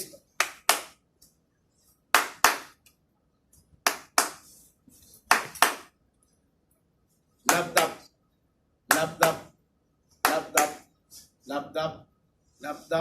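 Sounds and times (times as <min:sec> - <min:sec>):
sharp hand claps in pairs: 0:00.3 - 0:01.0, 0:02.1 - 0:02.8, 0:03.8 - 0:04.5, 0:05.3 - 0:06.0, 0:07.5 - 0:08.0, 0:08.9 - 0:09.5, 0:10.2 - 0:10.9.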